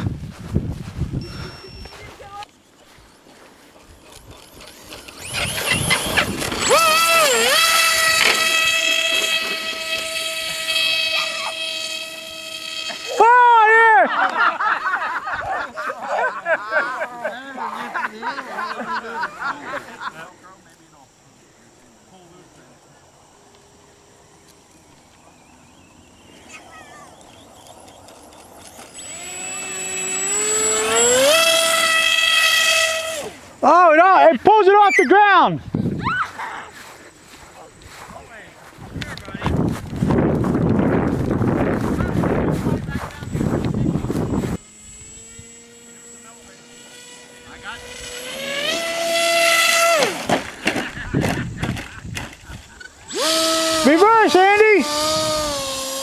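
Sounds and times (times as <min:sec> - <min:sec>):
electric motor whining: 0:03.8 - 0:13.7, 0:24.6 - 0:34.0, 0:39.0 - 0:56.0.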